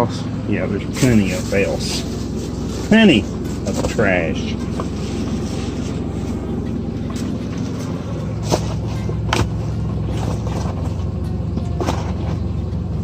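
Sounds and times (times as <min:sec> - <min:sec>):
truck engine idling: 0:00.0 - 0:13.0.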